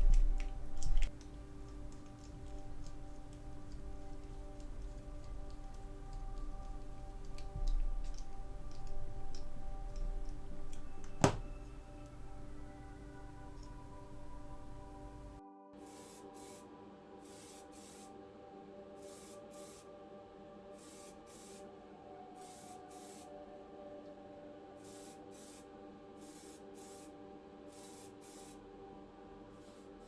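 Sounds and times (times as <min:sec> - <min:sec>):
steady low hum: 0:00.0 - 0:15.4
hissing spray bursts: 0:15.8 - 0:18.1, 0:19.0 - 0:19.9, 0:20.8 - 0:21.6, 0:22.4 - 0:23.3, 0:24.8 - 0:27.1, 0:27.7 - 0:28.6.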